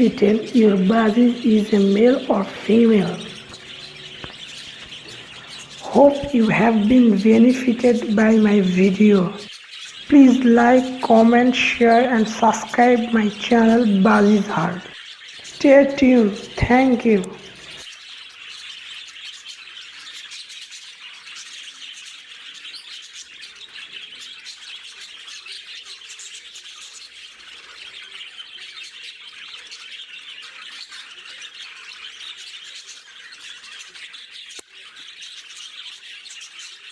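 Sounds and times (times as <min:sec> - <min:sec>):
budgerigars chattering and squawking: 0:00.0 - 0:09.5, 0:10.2 - 0:17.8.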